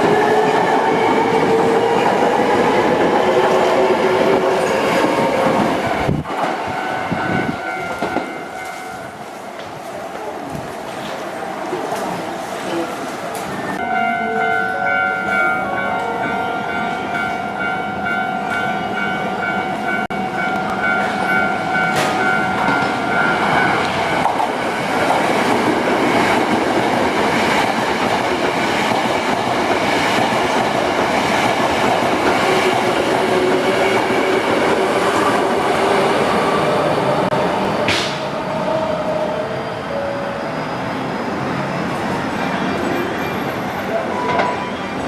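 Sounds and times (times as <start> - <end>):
train wheels rumbling on rails: 0.0 - 13.8, 15.3 - 45.0
level-crossing warning bell ringing: 5.8 - 9.4, 13.6 - 25.1, 39.4 - 45.0.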